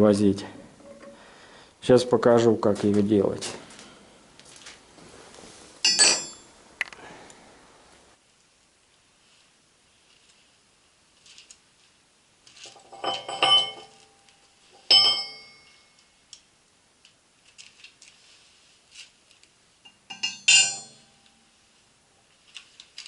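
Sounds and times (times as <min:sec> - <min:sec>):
metal tools clinking and clanging: 0:05.8 - 0:06.5, 0:12.6 - 0:14.2, 0:14.8 - 0:15.9, 0:19.9 - 0:21.4
loud metal clanks: 0:20.1 - 0:21.1.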